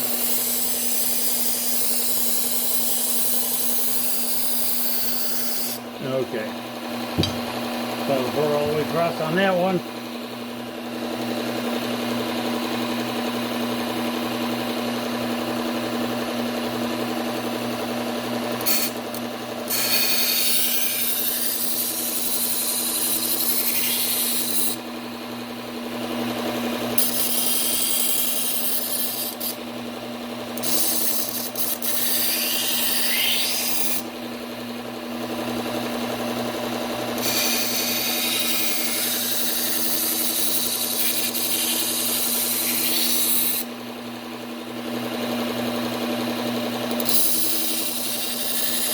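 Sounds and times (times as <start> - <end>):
belt sander motor humming: 5.4 - 10.1
knife blade grinding on belt: 46.9 - 48.9.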